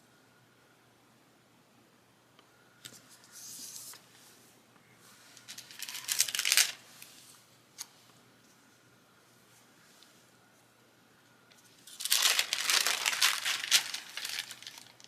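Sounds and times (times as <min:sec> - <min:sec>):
paper rustling and crinkling: 0:05.2 - 0:07.1, 0:11.6 - 0:15.0.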